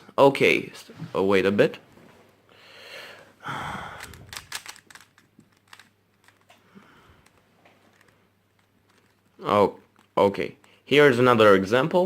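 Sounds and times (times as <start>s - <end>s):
cube layers clicking: 4.0s - 6.6s, 7.2s - 10.8s
plastic cube scraping rustle: 7.2s - 10.2s.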